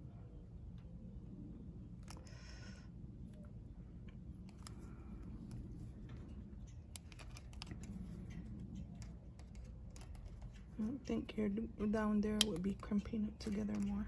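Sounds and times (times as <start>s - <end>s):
low background rumble: 0.0s - 14.0s
faint clicks and taps: 3.4s - 11.2s.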